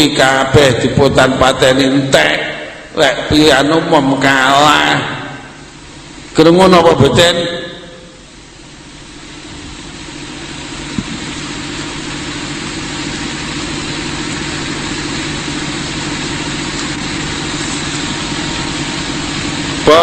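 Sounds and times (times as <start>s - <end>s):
constant hiss: 0.0s - 20.0s
low engine-like hum: 8.1s - 20.0s.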